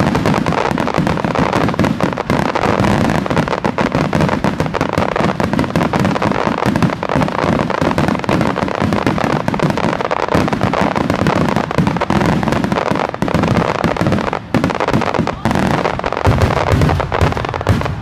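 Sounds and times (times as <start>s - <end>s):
fireworks cracking and booming: 0.0s - 18.0s.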